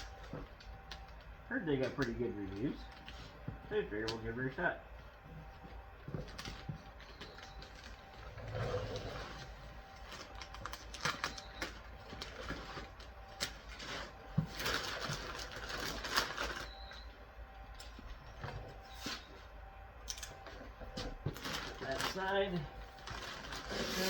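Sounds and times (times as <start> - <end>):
cardboard rustling: 8.8 - 19.8, 20.4 - 24.0.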